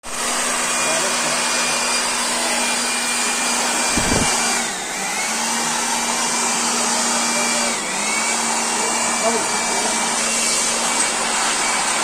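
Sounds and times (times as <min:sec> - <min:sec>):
electric air blower running: 0:00.0 - 0:12.0
short low thump: 0:03.9 - 0:04.4.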